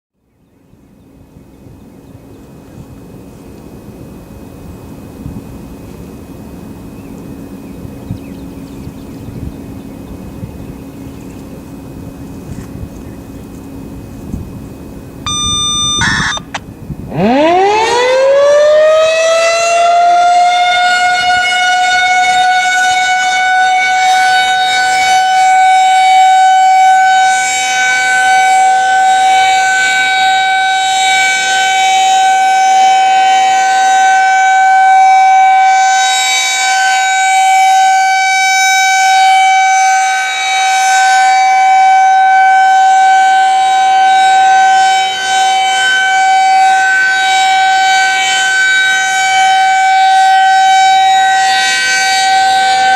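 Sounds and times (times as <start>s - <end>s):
outdoor warning siren steady tone: 15.2s - 52.9s.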